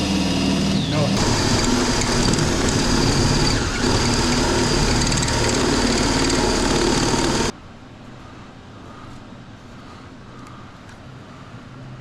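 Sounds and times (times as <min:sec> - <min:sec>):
motor whining and humming: 0:00.0 - 0:07.5.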